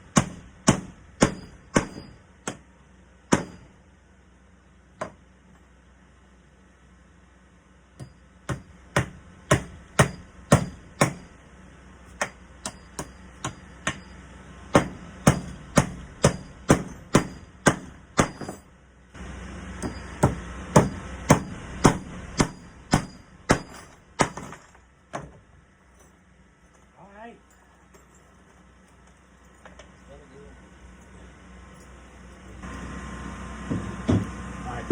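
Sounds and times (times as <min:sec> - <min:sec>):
hammer driving nails: 0:00.1 - 0:02.6, 0:03.3 - 0:03.7, 0:08.0 - 0:11.3, 0:14.7 - 0:18.6, 0:19.8 - 0:25.4.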